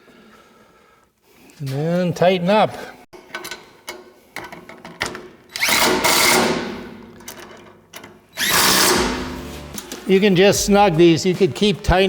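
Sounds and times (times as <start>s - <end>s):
power drill tightening a bolt: 5.5s - 6.7s, 8.4s - 10.0s.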